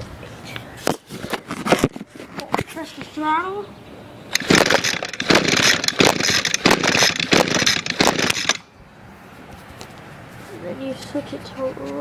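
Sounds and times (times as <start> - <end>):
recoil starter cord pulls: 4.3 - 8.6.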